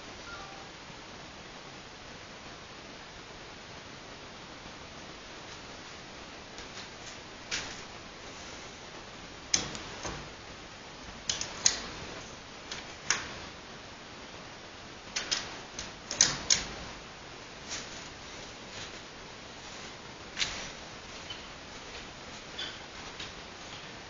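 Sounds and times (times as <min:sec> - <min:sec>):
steady hiss: 0:00.0 - 0:24.0
sharp clicks and light knocks: 0:09.5 - 0:10.3, 0:11.2 - 0:13.4, 0:15.1 - 0:16.8.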